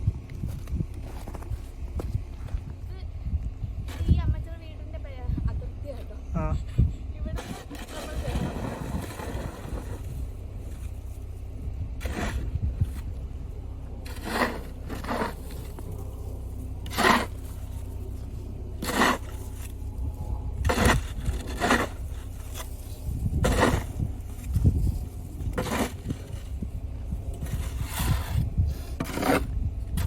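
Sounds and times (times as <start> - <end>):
steady low rumble: 0.0 - 30.0
snow shovel scraping: 7.4 - 11.2, 12.0 - 13.1, 14.0 - 19.8, 20.6 - 26.6, 27.4 - 29.6.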